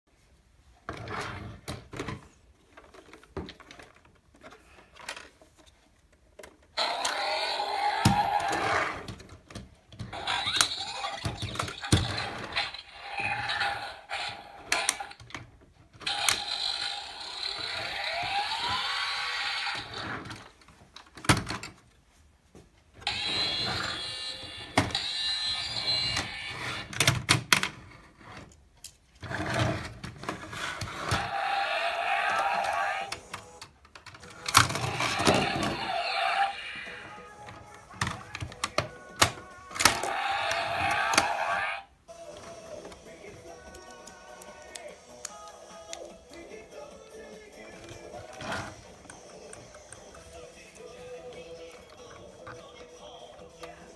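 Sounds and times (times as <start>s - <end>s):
toy electronic sound effects: 6.8s - 8.9s, 10.2s - 15.2s, 16.0s - 20.2s, 23.1s - 26.9s, 31.2s - 33.3s, 34.4s - 37.4s, 39.2s - 41.9s.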